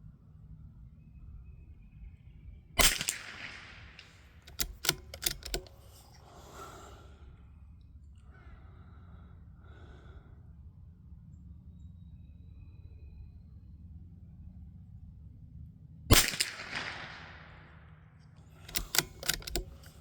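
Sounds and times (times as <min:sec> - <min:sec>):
rifle shot: 0:02.8 - 0:06.1, 0:16.1 - 0:17.6
rifle bolt metallic clicks: 0:02.8 - 0:06.2, 0:18.6 - 0:20.0.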